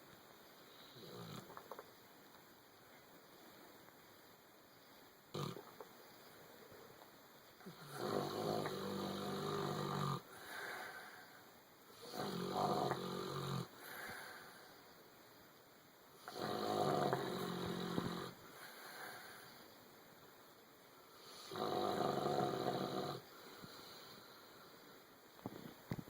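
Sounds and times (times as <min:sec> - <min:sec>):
dog snoring: 0:00.7 - 0:01.8, 0:05.3 - 0:05.8, 0:07.6 - 0:11.0, 0:11.9 - 0:14.2, 0:16.2 - 0:19.3, 0:21.2 - 0:24.1.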